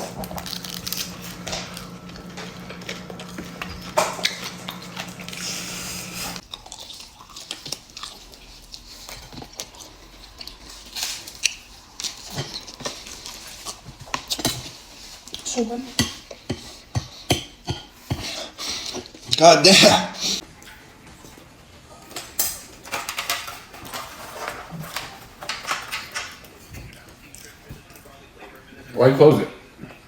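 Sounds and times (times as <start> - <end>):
people chewing: 0.0 - 29.0
cutlery clicking on dishes: 15.9 - 18.4, 22.1 - 26.6.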